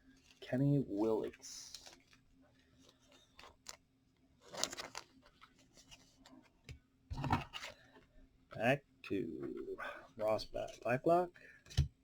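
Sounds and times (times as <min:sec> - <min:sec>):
plastic card sleeves rustling: 0:04.4 - 0:06.2.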